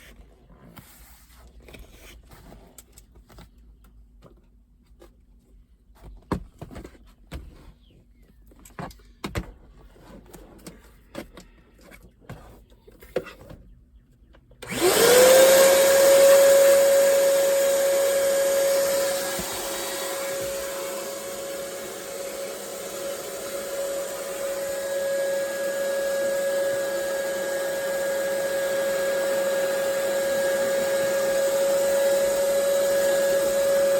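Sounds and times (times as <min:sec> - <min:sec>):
shop vacuum motor whining: 0:14.6 - 0:33.9.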